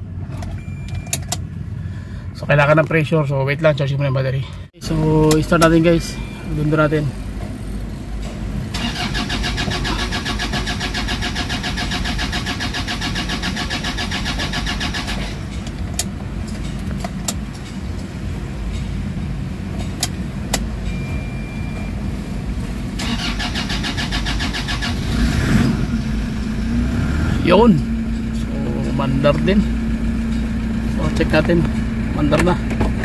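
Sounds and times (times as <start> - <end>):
diesel engine running: 4.6 - 33.0
starter motor cranking engine: 8.7 - 15.7, 23.0 - 26.4.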